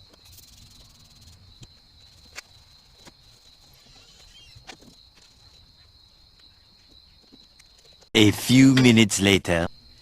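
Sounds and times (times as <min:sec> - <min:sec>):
high-pitched insect trill: 0:00.0 - 0:08.1.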